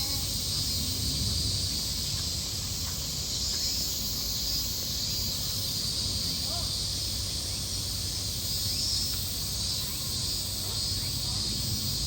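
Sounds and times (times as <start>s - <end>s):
cicadas hissing: 0.0s - 12.0s.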